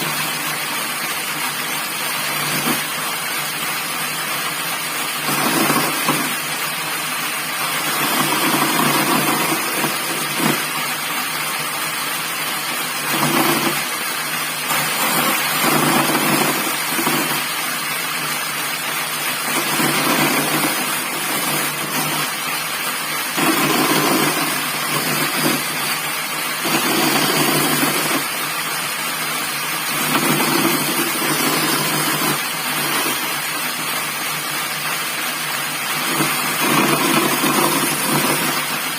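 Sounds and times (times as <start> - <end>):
bandsaw cutting wood: 2.1 - 3.0, 5.1 - 6.9, 7.5 - 11.1, 12.8 - 17.9, 19.3 - 28.6, 29.7 - 34.2, 35.9 - 38.9.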